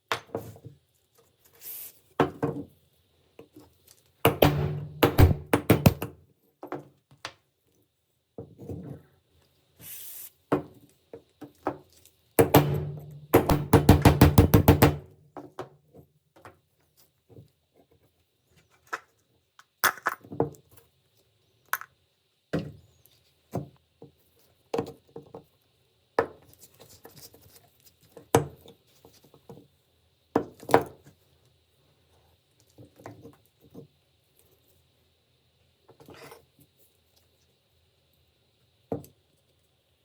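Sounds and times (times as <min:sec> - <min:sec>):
loud taps on metal: 0:04.3 - 0:06.1, 0:12.4 - 0:15.0.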